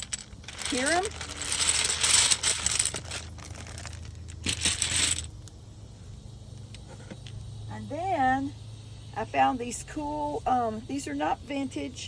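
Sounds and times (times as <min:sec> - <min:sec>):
dominoes rattling in a bag: 0:00.0 - 0:05.3.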